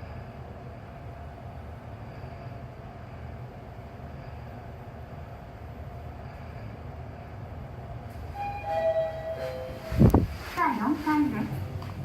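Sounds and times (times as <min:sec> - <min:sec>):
faint steady whine: 0:00.0 - 0:12.0
elevator car rumbling: 0:07.6 - 0:12.0.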